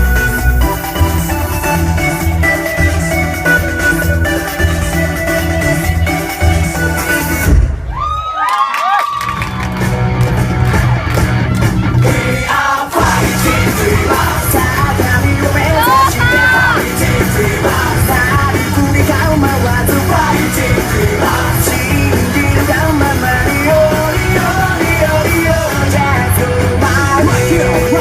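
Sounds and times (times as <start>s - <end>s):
steady bass line: 0.0s - 7.9s, 9.2s - 28.0s
loud rock music: 0.0s - 8.0s, 9.2s - 28.0s
person shouting vocals: 15.6s - 16.9s.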